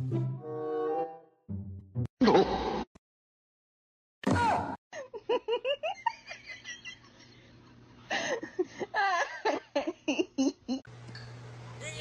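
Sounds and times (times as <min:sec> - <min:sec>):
person giggling: 0:05.0 - 0:07.2, 0:08.2 - 0:10.9.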